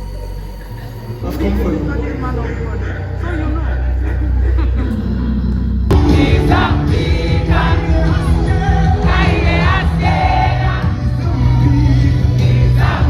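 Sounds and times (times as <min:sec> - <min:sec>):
choir-like group singing: 0:00.0 - 0:13.0
steady bass line: 0:00.0 - 0:13.0.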